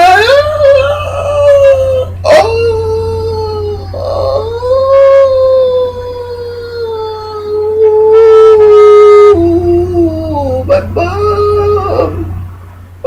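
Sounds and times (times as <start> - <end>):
person howling: 0.0 - 12.5.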